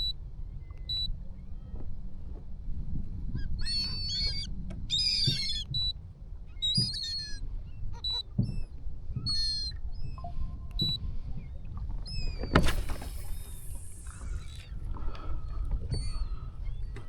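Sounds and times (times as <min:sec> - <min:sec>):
seabirds calling: 0:06.6 - 0:17.0
steady low rumble: 0:12.6 - 0:16.7.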